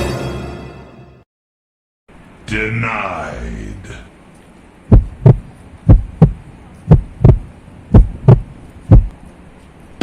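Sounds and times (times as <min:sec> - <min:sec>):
heartbeat thumps: 0:04.9 - 0:09.2.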